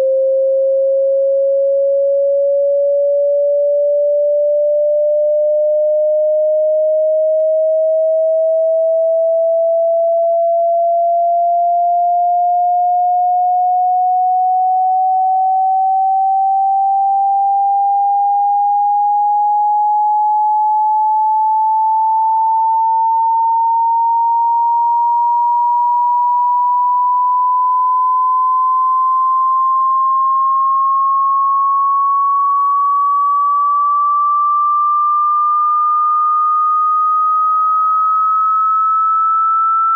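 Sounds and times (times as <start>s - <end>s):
rising sine test tone: 0.0s - 39.9s.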